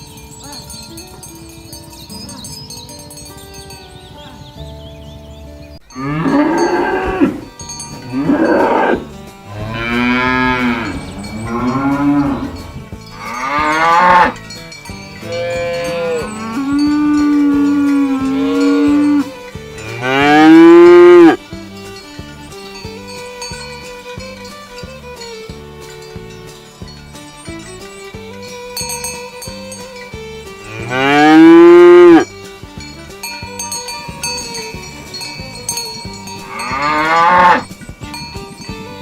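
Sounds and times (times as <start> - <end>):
cattle mooing: 6.0 - 14.4, 19.8 - 21.4, 30.7 - 32.3, 36.4 - 37.7.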